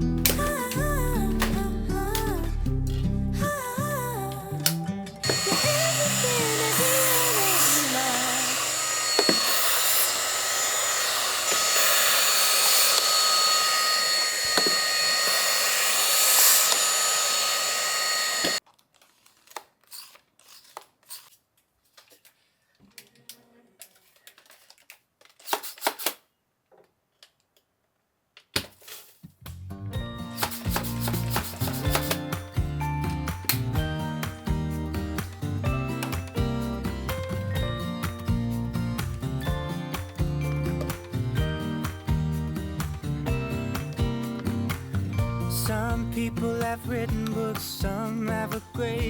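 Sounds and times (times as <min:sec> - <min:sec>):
electric motor and fan whining: 0:05.2 - 0:18.6.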